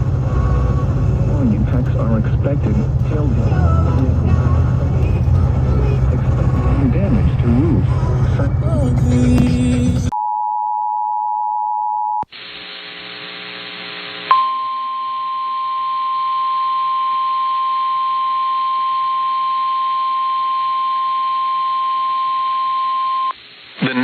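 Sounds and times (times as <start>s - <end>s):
radio hiss: 12.3s - 14.3s, 23.3s - 24.0s
steady pure alarm tone: 14.3s - 23.3s.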